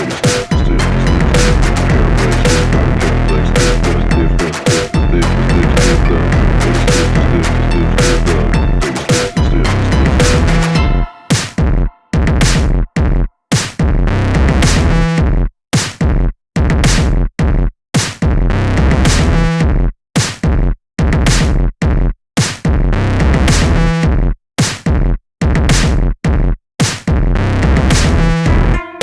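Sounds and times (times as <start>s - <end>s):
stuttering electronic beat with synthesizer: 0.0s - 15.4s, 18.8s - 19.8s, 27.7s - 29.0s.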